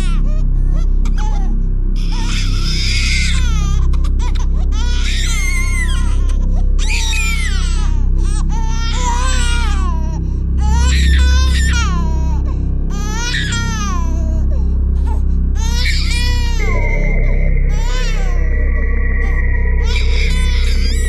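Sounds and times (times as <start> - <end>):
low music drone: 0.0 - 21.0
baby crying: 15.6 - 21.0.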